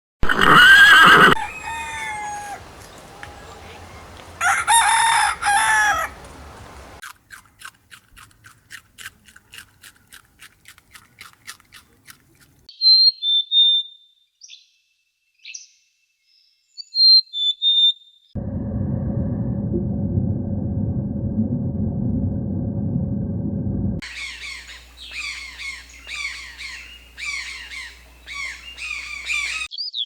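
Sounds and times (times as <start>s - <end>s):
rooster crowing: 0.5s - 7.0s
short high whistled calls: 24.0s - 30.0s.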